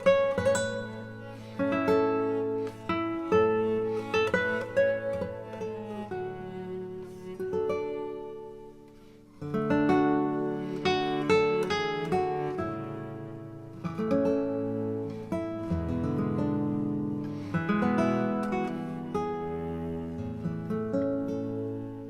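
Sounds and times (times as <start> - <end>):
acoustic guitar music: 0.0 - 22.0.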